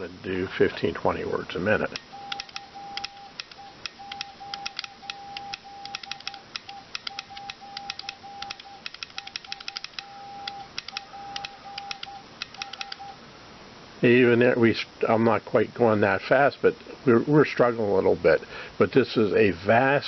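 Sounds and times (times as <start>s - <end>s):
keying clicks: 2.0s - 13.1s
morse code tone: 2.1s - 13.2s.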